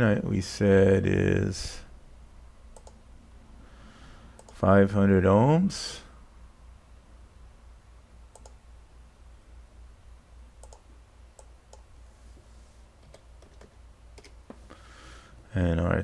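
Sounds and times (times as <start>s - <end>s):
steady low hum: 0.0s - 16.0s
computer input clicks: 2.8s - 3.0s, 4.4s - 4.6s, 8.3s - 8.6s, 10.6s - 10.8s.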